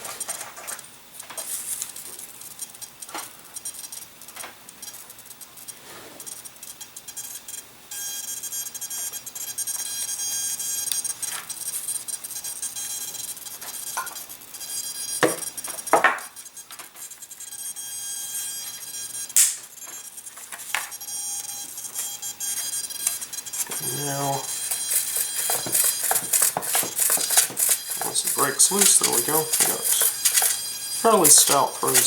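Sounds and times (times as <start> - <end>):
high-pitched servo whine: 1.4 - 32.0.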